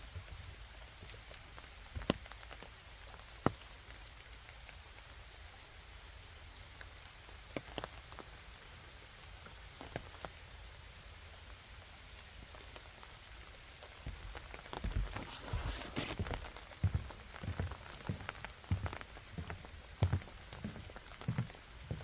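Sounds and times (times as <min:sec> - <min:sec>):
rain pattering on foliage: 0:00.0 - 0:22.0.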